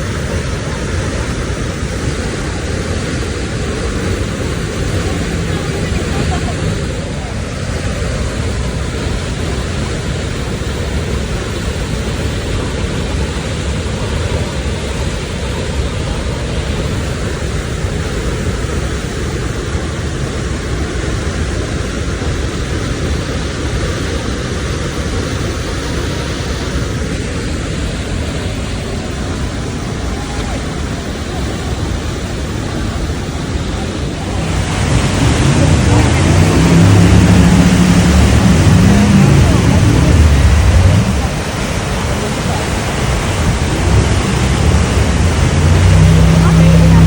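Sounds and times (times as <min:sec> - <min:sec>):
speedboat rush of water: 0:00.0 - 0:47.0
wind buffeting microphone: 0:26.5 - 0:47.0.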